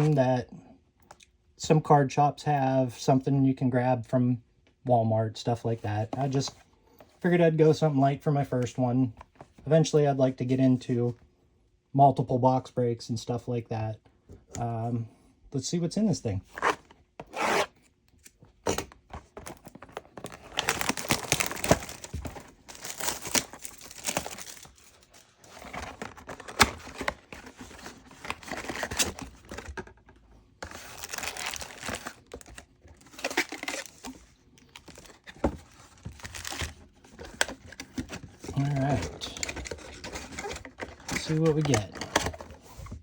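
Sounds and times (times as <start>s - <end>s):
packaging crinkling and tearing: 18.2s - 30.0s, 30.6s - 42.7s.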